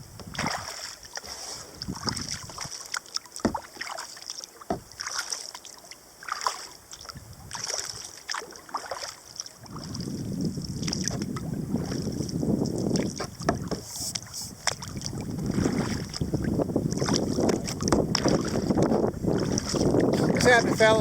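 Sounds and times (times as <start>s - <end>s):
paddle splashing in water: 0.2s - 21.0s
wind buffeting microphone: 1.7s - 2.7s, 7.2s - 8.0s, 9.6s - 21.0s.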